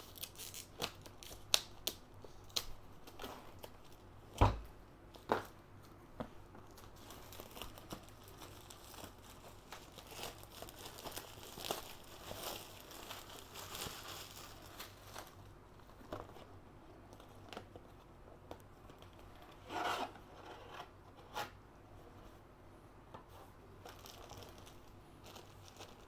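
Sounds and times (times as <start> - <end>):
plastic packaging crinkling: 0.0 - 4.1, 6.6 - 16.4, 23.8 - 26.0.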